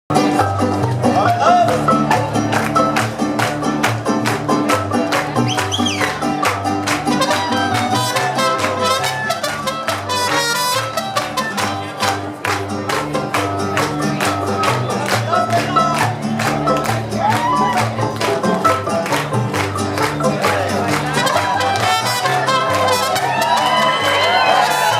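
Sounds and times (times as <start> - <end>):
guitars strumming: 0.1 - 24.9
mariachi band playing: 0.1 - 24.9
trumpet melody: 6.9 - 12.4, 21.1 - 24.9.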